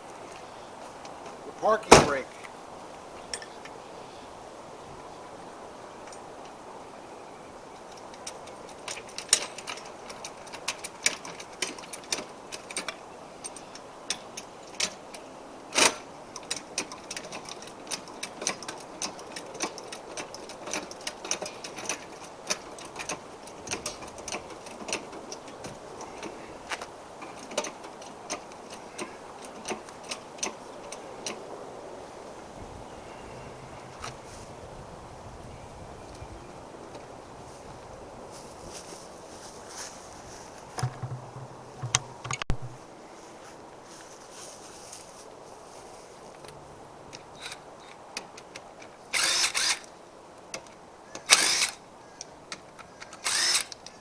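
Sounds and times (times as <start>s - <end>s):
metallic knock: 40.8s - 42.8s.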